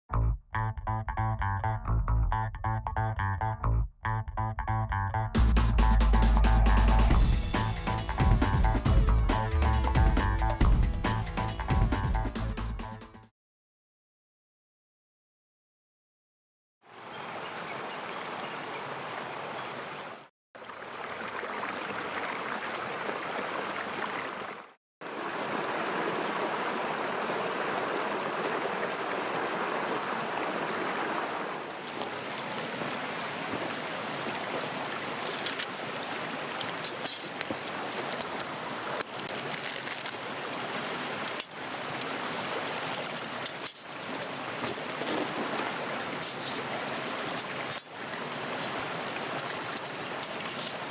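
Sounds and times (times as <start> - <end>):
river water rushing: 16.9 - 50.9.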